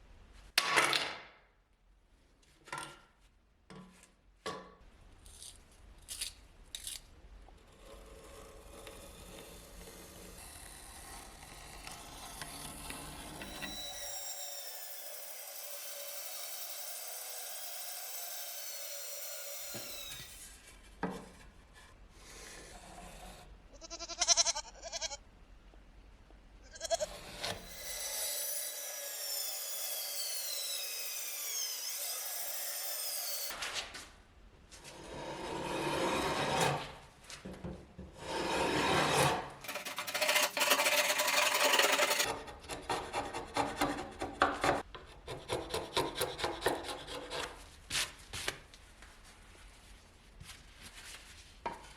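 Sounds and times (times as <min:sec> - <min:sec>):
rasp scraping wood: 0:38.2 - 0:47.6.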